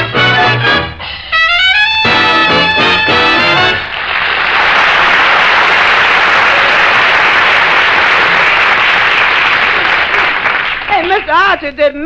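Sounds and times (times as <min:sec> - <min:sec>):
swing band brass: 0:00.0 - 0:04.0
audience applauding: 0:02.8 - 0:11.7.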